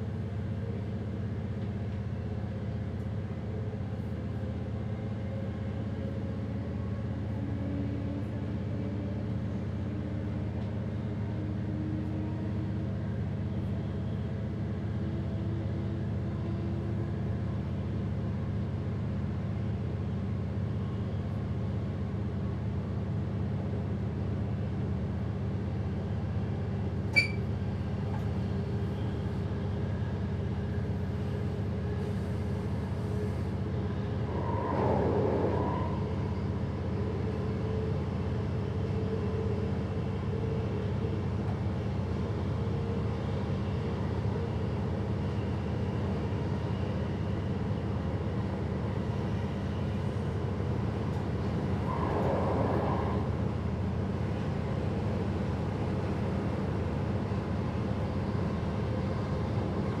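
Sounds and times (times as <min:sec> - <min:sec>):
train rumble and hum: 0:00.0 - 1:00.0.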